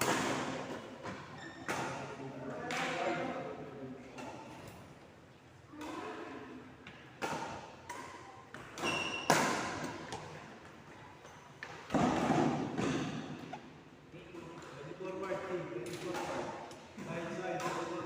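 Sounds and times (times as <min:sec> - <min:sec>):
dull thumps in echoing room: 0:11.6 - 0:13.6.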